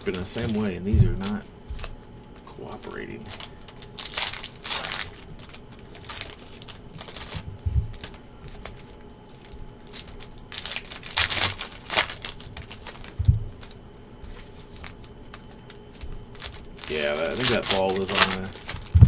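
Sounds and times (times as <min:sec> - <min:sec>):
dull thumps: 0:00.0 - 0:02.6, 0:06.8 - 0:09.8, 0:11.2 - 0:17.6, 0:18.2 - 0:19.0
card pack wrappers tearing: 0:00.0 - 0:19.0.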